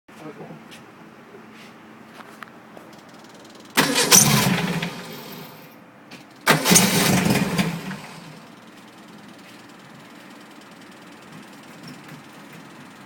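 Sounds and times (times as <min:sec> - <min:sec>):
car engine bursts: 0:03.1 - 0:05.8, 0:06.4 - 0:13.0.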